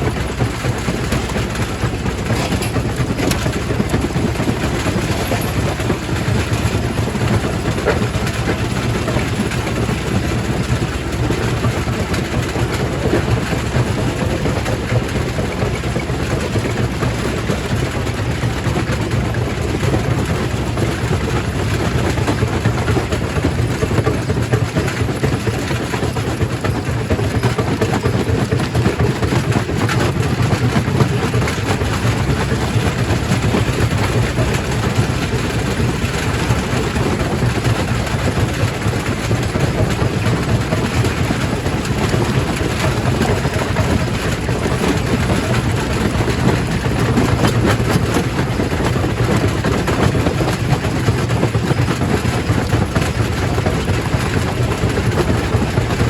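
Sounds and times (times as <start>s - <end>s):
rock crusher rumbling: 0.0s - 56.0s
stone rattling and clattering: 2.2s - 6.0s.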